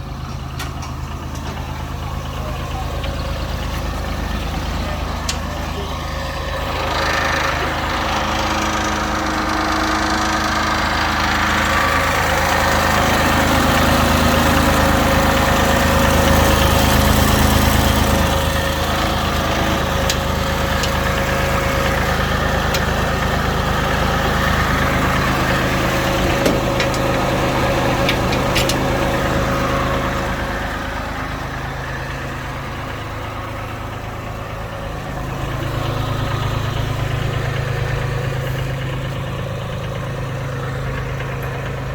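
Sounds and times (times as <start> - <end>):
diesel loader engine running: 0.0 - 41.9.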